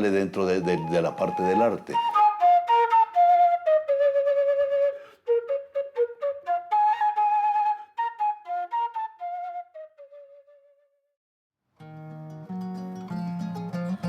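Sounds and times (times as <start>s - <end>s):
solo flute melody: 0.4s - 11.1s.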